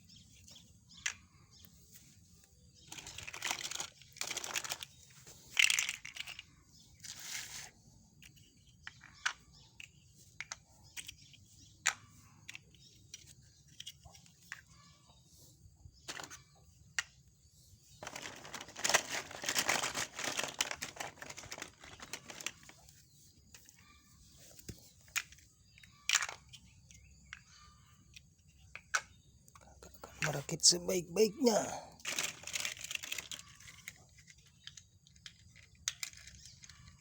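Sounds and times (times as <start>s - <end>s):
plastic rustling: 2.9s - 6.3s, 18.0s - 23.0s, 31.5s - 34.0s.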